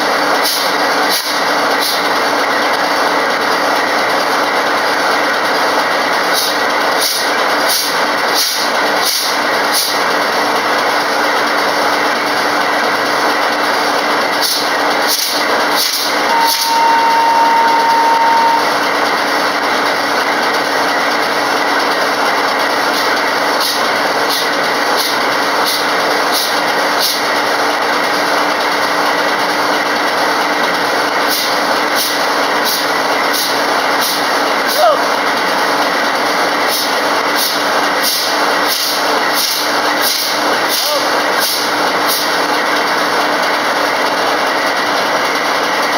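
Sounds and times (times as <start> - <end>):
steady high beep: 16.3 - 18.8.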